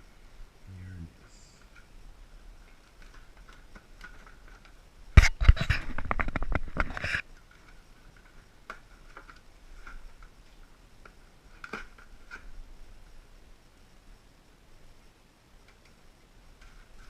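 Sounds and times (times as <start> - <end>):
packaging clicks and rustles: 2.6 - 4.8.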